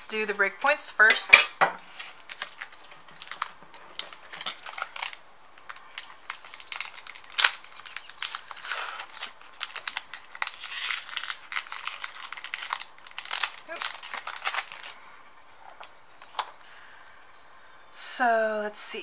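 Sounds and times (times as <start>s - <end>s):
foil wrapper crinkling and tearing: 1.8s - 15.0s.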